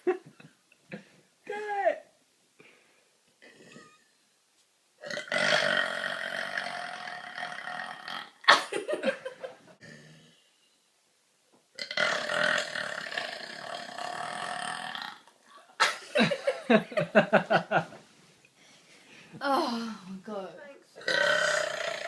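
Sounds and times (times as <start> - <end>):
woman burping: 3.4 - 4.1, 21.0 - 22.0.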